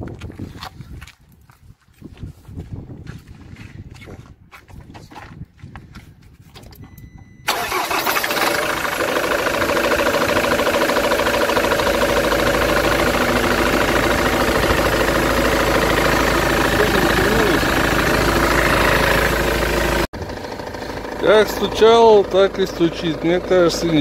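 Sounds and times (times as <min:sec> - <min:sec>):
short beep: 0:06.8 - 0:07.6
van engine starting and idling: 0:06.8 - 0:24.0
engine knock: 0:07.5 - 0:24.0.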